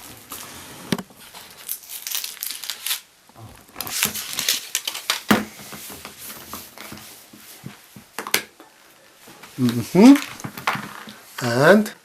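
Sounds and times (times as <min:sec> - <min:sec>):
foil wrapper crinkling and tearing: 0:01.2 - 0:03.1, 0:03.7 - 0:05.3.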